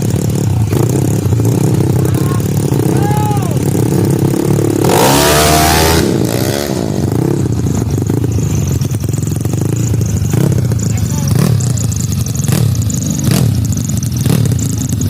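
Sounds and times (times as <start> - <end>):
engine revving hard: 0.0 - 7.8
scooter engines droning: 0.0 - 15.0.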